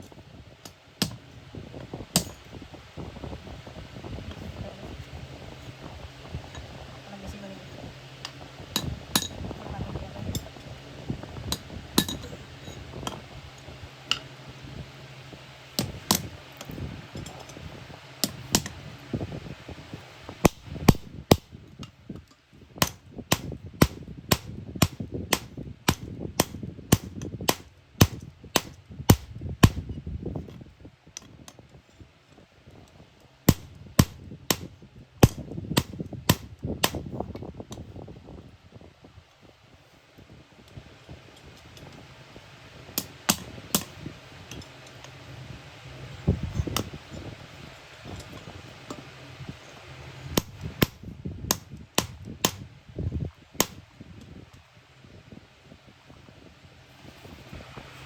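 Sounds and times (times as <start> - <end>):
hammer striking iron: 12.0 - 12.3, 22.8 - 29.8, 33.5 - 37.0, 50.4 - 52.6.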